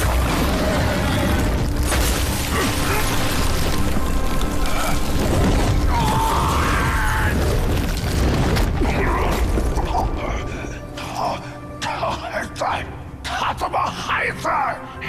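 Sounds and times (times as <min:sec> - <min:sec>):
magical blasts and impacts: 0:00.0 - 0:10.5.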